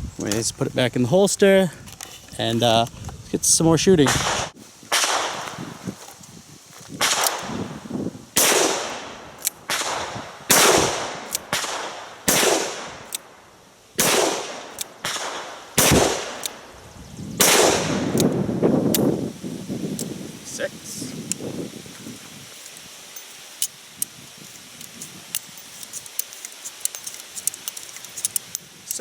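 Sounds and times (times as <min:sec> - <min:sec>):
revolver gunshots ringing out: 0:04.1 - 0:05.5, 0:08.4 - 0:13.0, 0:14.0 - 0:16.6, 0:17.4 - 0:18.2
sharp clicks: 0:07.0 - 0:07.6, 0:08.4 - 0:13.3, 0:14.0 - 0:16.7, 0:17.4 - 0:19.1.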